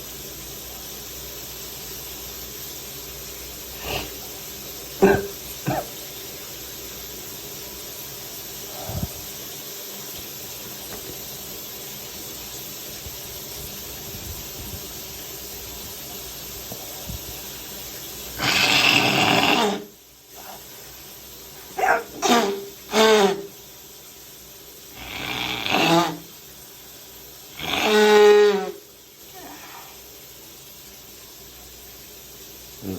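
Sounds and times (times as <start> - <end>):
man blowing his nose: 3.8 - 4.2, 18.4 - 20.8, 21.6 - 23.6, 25.0 - 26.4, 27.6 - 30.1
throaty voiced sounds: 18.4 - 20.7, 21.7 - 23.5, 25.0 - 26.2, 27.6 - 28.8.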